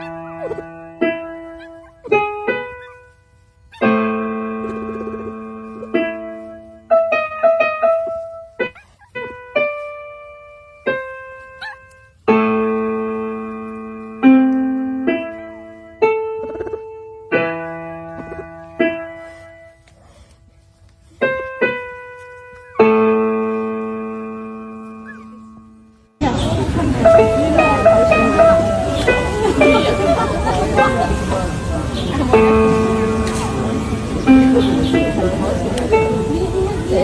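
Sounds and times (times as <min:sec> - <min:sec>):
slow solo piano: 0:00.0 - 0:37.0.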